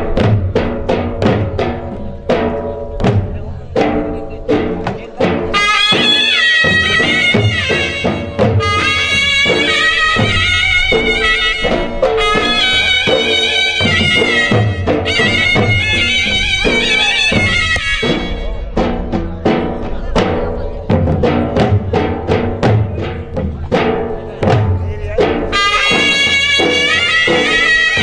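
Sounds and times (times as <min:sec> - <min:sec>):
drum beats: 0:00.0 - 0:28.0
reedy wind instrument melody: 0:05.1 - 0:19.4, 0:23.9 - 0:28.0.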